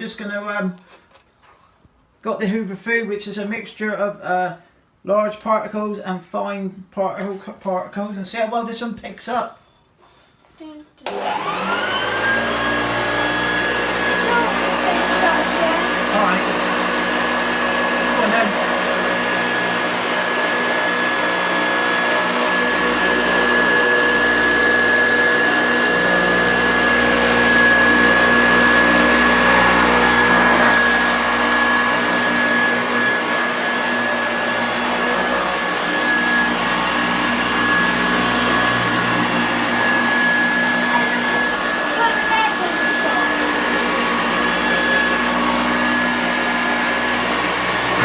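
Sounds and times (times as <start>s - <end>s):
vacuum cleaner motor whine: 11.1s - 48.0s.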